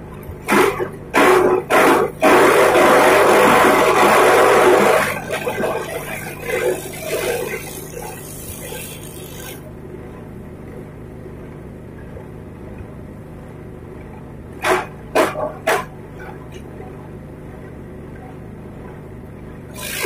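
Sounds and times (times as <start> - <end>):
grass chopper machine running: 0.5 - 9.7, 19.7 - 20.0.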